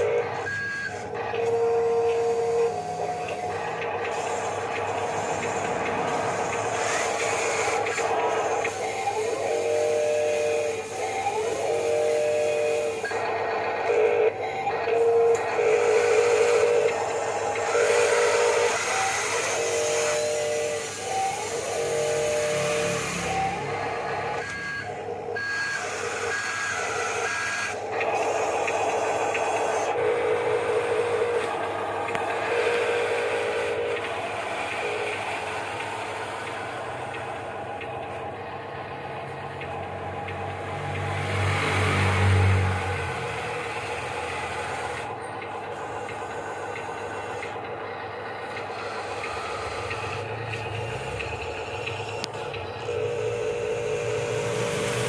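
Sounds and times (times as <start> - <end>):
reversing beeper: 0.0 - 3.8, 8.8 - 27.8
model mechanical whir: 0.0 - 55.0
small electric motors and gears whining: 0.0 - 55.0.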